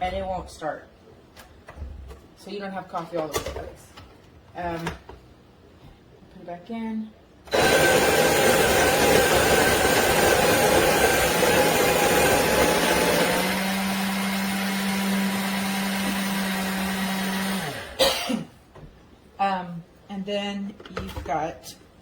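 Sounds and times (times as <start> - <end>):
coffee grinder grinding beans: 7.5 - 17.9.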